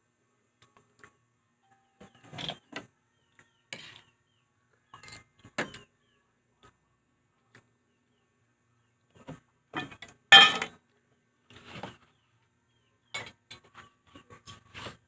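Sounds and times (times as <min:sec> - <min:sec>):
dishes and utensils clinking: 0:09.8 - 0:10.7.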